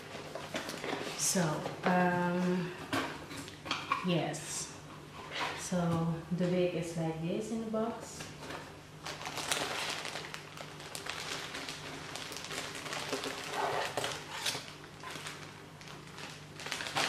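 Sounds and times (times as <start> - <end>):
packaging crinkling and rustling: 0.0 - 2.2, 8.2 - 17.0
low steady hum: 0.0 - 17.0.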